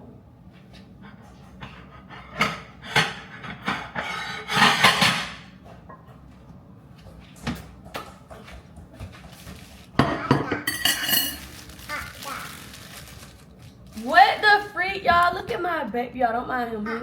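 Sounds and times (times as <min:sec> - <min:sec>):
kitchen knocks and bumps: 0:07.4 - 0:11.5.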